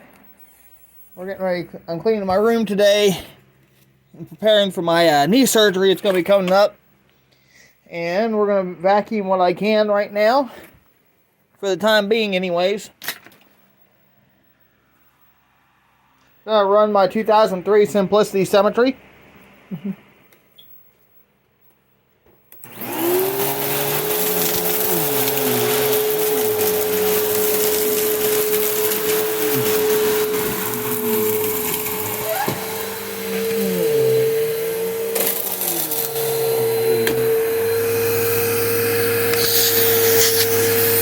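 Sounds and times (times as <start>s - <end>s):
vacuum cleaner motor whine: 22.6s - 41.0s.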